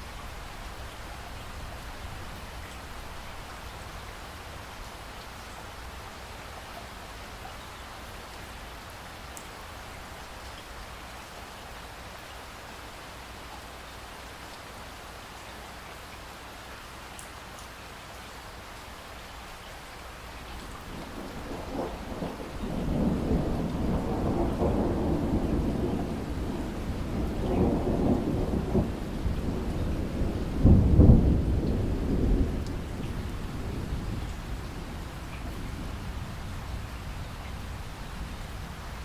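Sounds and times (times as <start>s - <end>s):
steady rain: 0.0s - 39.0s
thunder rumbling: 20.8s - 39.0s.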